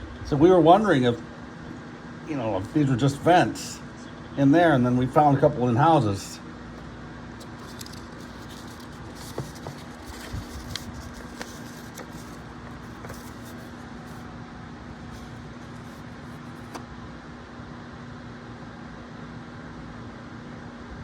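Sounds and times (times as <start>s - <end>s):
room hum and hiss: 0.0s - 21.0s
handling clicks and rustles: 6.7s - 14.3s.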